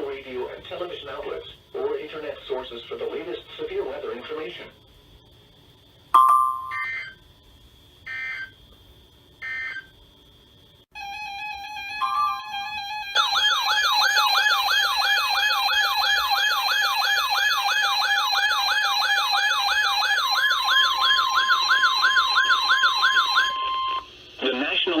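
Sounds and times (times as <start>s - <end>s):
electronic beeping tones: 6.2s - 7.2s, 12.0s - 16.6s
steady warning tone: 6.2s - 7.3s, 8.0s - 8.7s, 9.4s - 10.1s, 10.9s - 24.1s
warbling siren-like tone: 11.0s - 24.0s.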